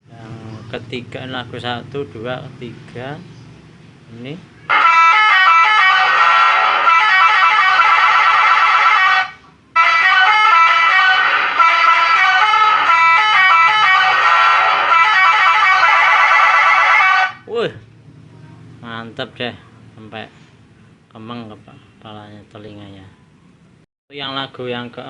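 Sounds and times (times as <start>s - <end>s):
electronic bus horn melody: 4.7s - 17.4s.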